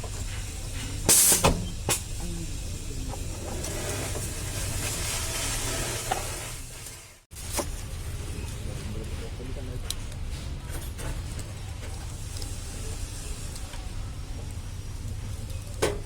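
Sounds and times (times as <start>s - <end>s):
steady low hum: 0.0s - 4.6s
short loud hiss: 1.1s - 2.1s.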